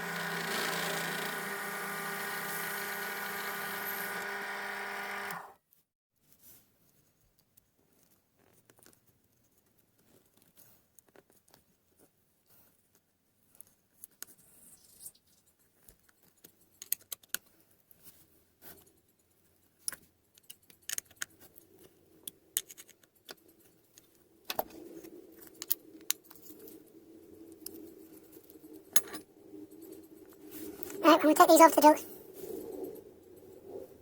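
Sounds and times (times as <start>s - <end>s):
metallic clicks of small parts: 15.9s - 17.5s, 19.8s - 21.5s, 22.2s - 24.6s.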